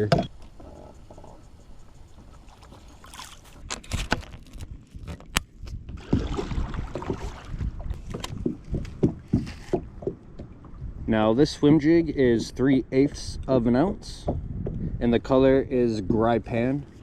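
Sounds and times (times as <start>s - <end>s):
water sloshing around kayak hull: 0.3s - 11.1s
knocks and clicks on boat: 5.0s - 10.9s, 14.1s - 14.9s.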